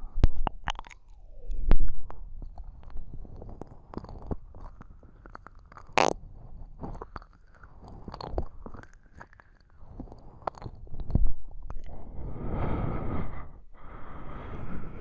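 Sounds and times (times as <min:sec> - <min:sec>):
wet mouth clicks: 0:00.0 - 0:06.2, 0:06.8 - 0:12.0.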